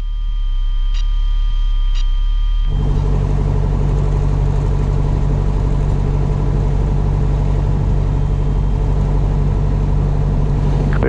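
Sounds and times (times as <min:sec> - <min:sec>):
aircraft piston engine running: 0:02.7 - 0:11.0.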